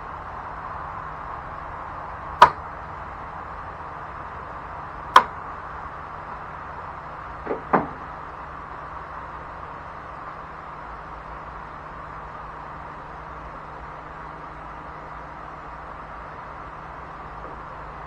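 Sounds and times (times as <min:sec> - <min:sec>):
sharp clicks of hand tools: 0:02.4 - 0:02.6, 0:05.2 - 0:05.4.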